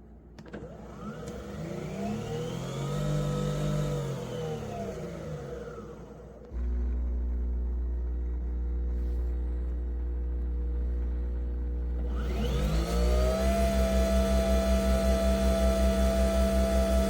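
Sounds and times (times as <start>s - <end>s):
coffee machine humming: 0.0s - 17.0s
motor whine: 8.8s - 17.0s.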